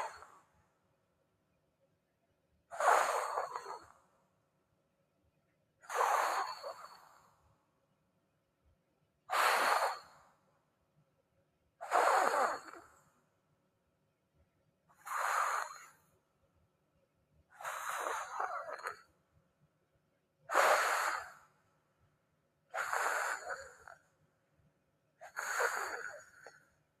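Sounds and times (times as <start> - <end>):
person snoring: 2.7 - 3.9, 5.8 - 7.2, 11.8 - 12.8, 17.6 - 19.0, 22.8 - 24.0, 25.2 - 26.6.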